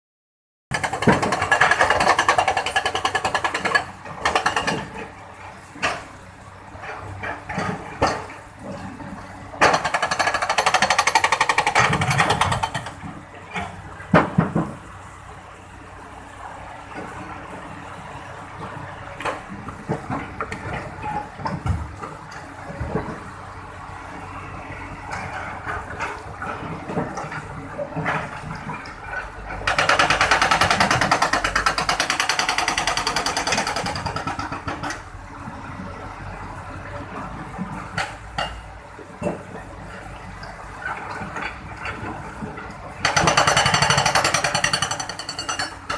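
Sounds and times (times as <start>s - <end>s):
excavator hammering rattle: 0.7s - 5.2s, 9.6s - 14.8s, 25.1s - 35.1s, 40.9s - 45.9s.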